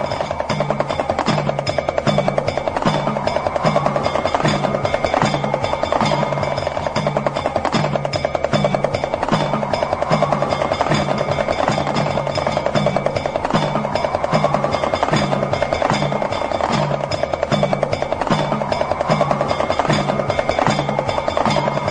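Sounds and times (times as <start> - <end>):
hand drum rattling roll: 0.0 - 21.9.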